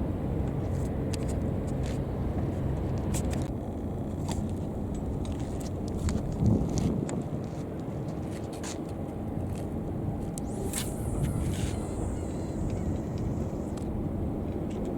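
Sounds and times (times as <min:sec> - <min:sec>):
low engine rumble: 0:10.1 - 0:14.9.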